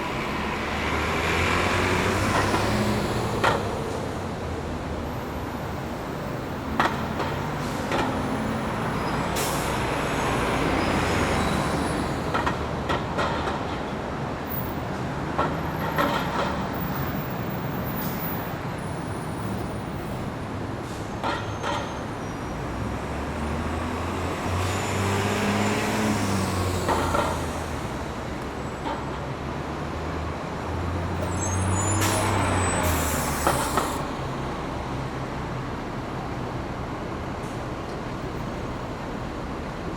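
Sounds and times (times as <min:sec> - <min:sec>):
bus engines humming: 0:00.0 - 0:39.9
air brake hisses: 0:31.5 - 0:34.1.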